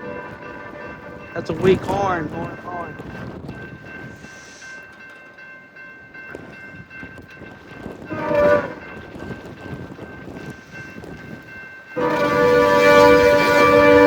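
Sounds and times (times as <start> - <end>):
rumble of arriving train: 0.0 - 14.0
weak locomotive horn blast: 8.1 - 8.9, 12.0 - 14.0.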